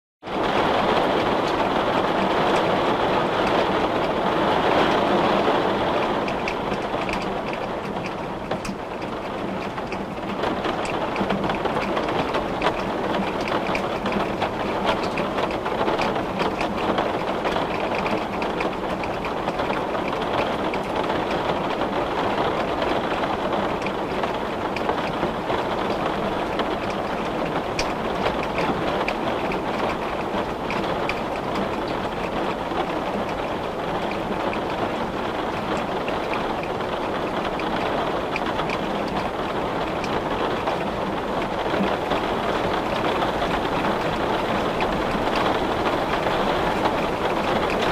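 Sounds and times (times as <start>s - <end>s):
heavy rain on glass: 0.2s - 47.9s.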